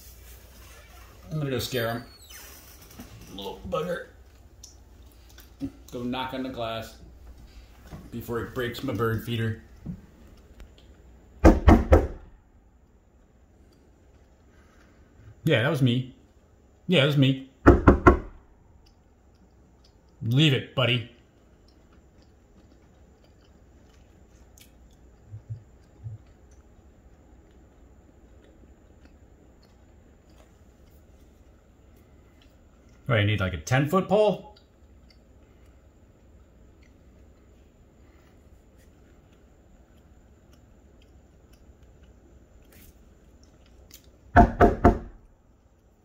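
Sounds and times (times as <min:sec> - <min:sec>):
loud knocks: 0:11.4 - 0:12.3, 0:17.6 - 0:18.4, 0:44.4 - 0:45.2.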